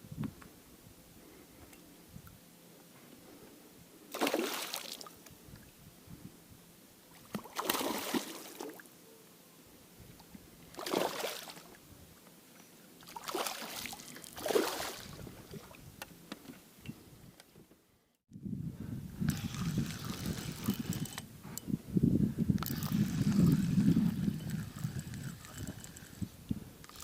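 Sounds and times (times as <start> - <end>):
water sloshing and splashing: 4.1 - 5.2, 7.1 - 8.8, 10.7 - 11.8, 13.0 - 15.8.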